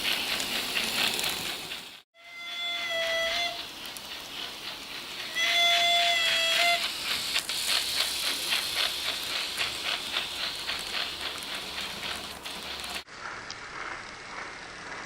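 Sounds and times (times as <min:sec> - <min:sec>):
steam exhaust chuffs: 0:00.0 - 0:15.0
steam whistle: 0:02.2 - 0:03.7, 0:05.3 - 0:06.9.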